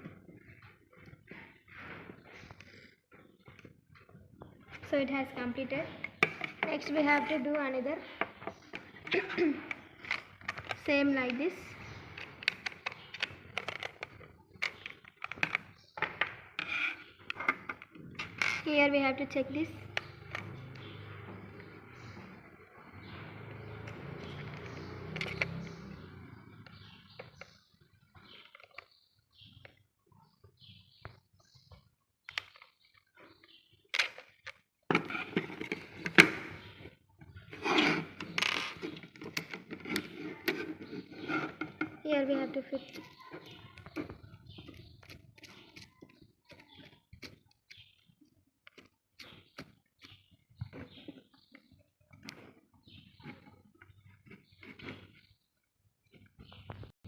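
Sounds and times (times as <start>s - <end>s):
small parts clicking and knocking: 8.2s - 11.4s, 12.1s - 18.7s, 23.8s - 25.9s, 32.2s - 36.8s
rustling and scraping: 34.0s - 47.4s, 52.2s - 55.5s.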